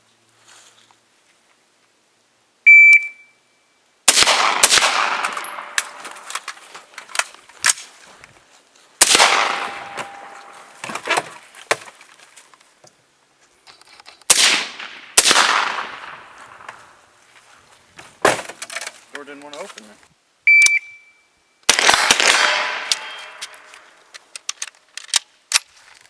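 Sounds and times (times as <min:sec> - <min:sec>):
shot timer beep: 0:02.7 - 0:03.4, 0:20.5 - 0:21.3
loud gunshots echoing: 0:04.1 - 0:06.2, 0:09.0 - 0:10.8, 0:14.3 - 0:16.7, 0:21.7 - 0:23.6
sharp gunshot cracks: 0:04.1 - 0:06.2, 0:09.0 - 0:10.8, 0:14.3 - 0:16.8, 0:21.7 - 0:23.7.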